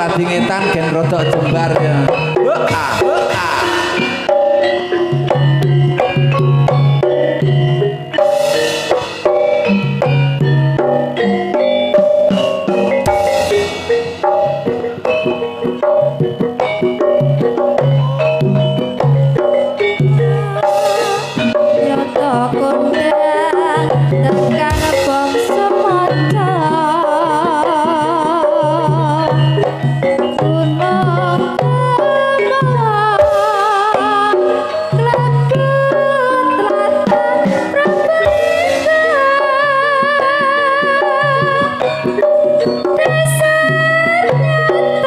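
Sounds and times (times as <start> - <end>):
wavering vocal-like melody: 0.0 - 6.3, 19.7 - 45.0
hand drum patterns: 0.0 - 45.0
sustained pitched percussion: 0.0 - 45.0.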